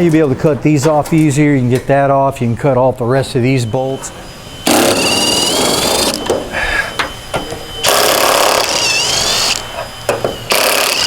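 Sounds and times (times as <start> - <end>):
cut-off wheel whining through metal: 3.7 - 11.0.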